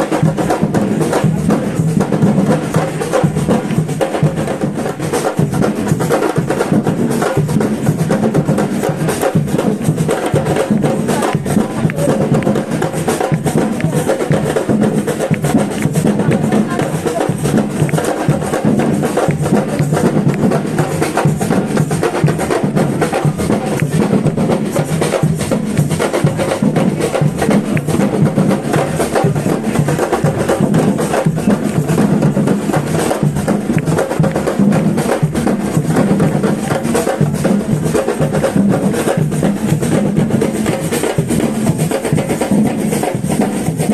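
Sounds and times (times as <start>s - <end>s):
percussion group drumming: 0.0s - 43.9s
wood block strikes: 9.5s - 42.8s.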